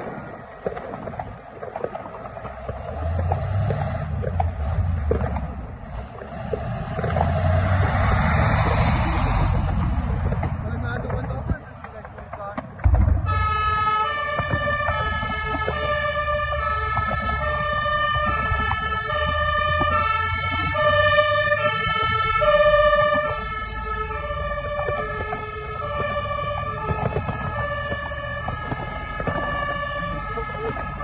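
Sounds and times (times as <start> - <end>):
two-tone fire engine siren: 0.0 - 11.4, 12.8 - 31.0
truck engine rumbling: 0.0 - 31.0.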